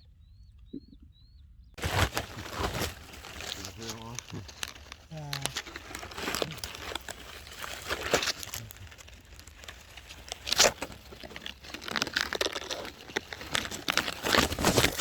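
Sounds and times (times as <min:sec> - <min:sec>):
rustling and crinkling of plants: 0:01.8 - 0:15.0.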